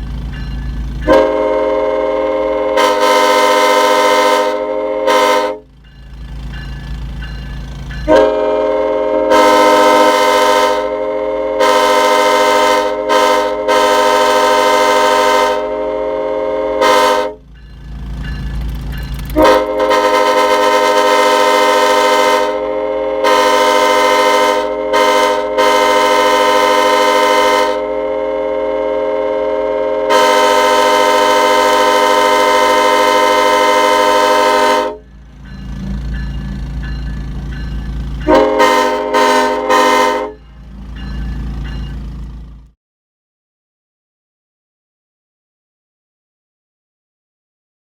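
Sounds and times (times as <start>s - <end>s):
multi-chime air horn blasts: 1.1s - 5.6s, 8.0s - 17.4s, 19.3s - 35.1s, 38.2s - 40.4s.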